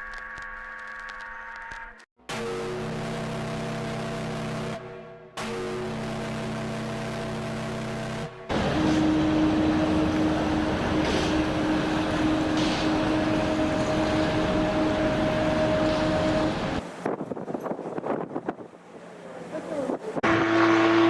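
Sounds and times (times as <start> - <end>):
ship's horn blast: 2.3 - 16.8, 20.2 - 21.0.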